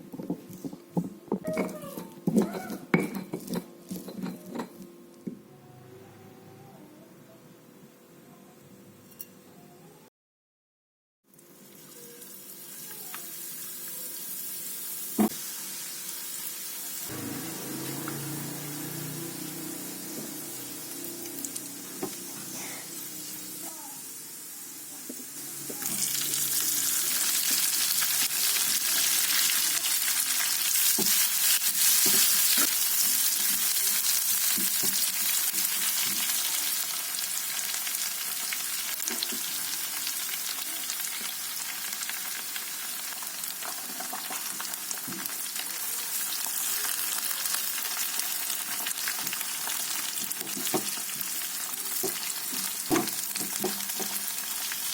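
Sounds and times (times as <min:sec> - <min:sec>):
food sizzling in hot oil: 0:11.4 - 0:54.9
spatula knocking and scraping pan: 0:52.0 - 0:54.2.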